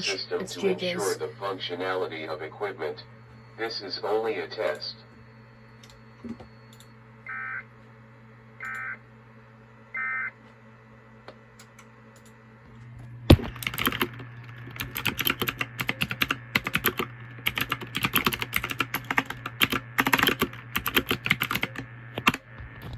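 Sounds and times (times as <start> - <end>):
steady low hum: 0.0 - 22.9
fast keyboard typing: 13.3 - 22.4.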